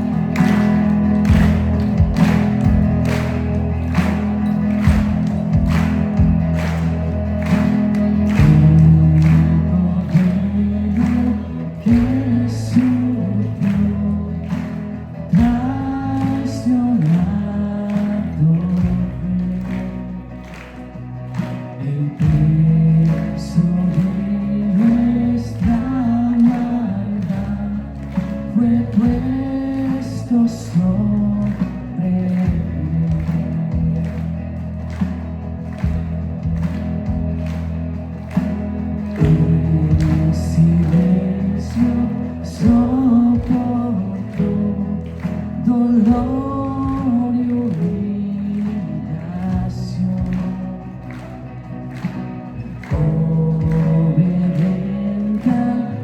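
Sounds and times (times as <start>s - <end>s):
drums steady beat: 0.0s - 13.0s, 15.4s - 15.8s, 25.6s - 26.8s, 31.6s - 34.3s, 34.9s - 47.3s, 49.3s - 50.6s, 52.0s - 54.8s
live band playing: 0.0s - 56.0s.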